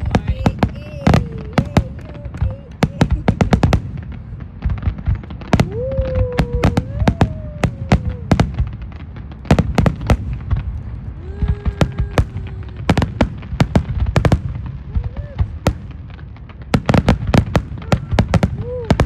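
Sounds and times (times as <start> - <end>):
wailing tones: 0.0 - 4.1, 5.4 - 8.6, 11.1 - 13.5
low rumble: 0.0 - 18.9
fireworks bangs: 0.0 - 19.0.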